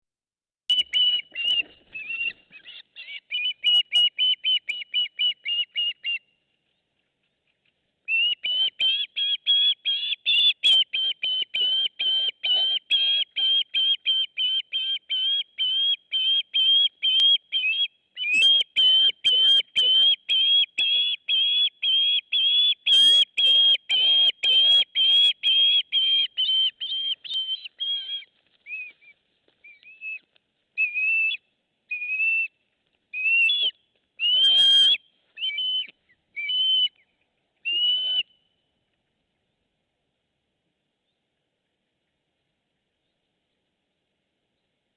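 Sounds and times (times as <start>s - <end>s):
bird whistling high notes: 33.2s - 36.9s.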